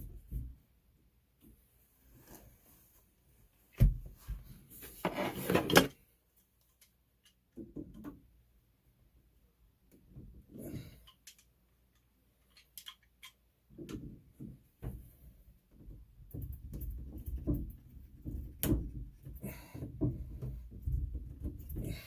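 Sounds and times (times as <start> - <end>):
scraping and rubbing: 4.7 - 5.9
knocks of plumbing parts: 15.7 - 22.0.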